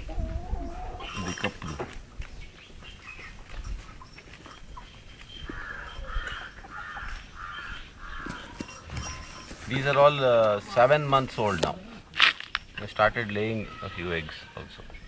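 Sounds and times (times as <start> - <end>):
bird calling harshly: 5.4 - 10.4.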